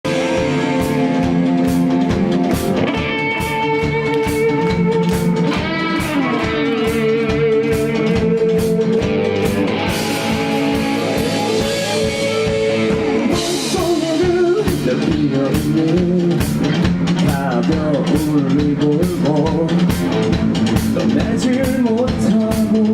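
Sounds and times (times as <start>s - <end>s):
electric guitar: 0.0s - 22.9s
steady drum beat: 0.0s - 22.9s.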